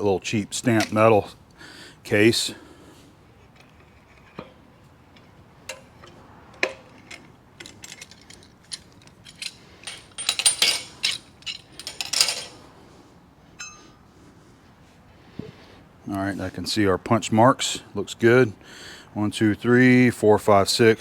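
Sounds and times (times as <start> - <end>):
metal tools clinking: 0.6 - 1.3, 3.5 - 12.7
metallic clattering: 3.5 - 12.7
short metallic ring: 13.6 - 14.0.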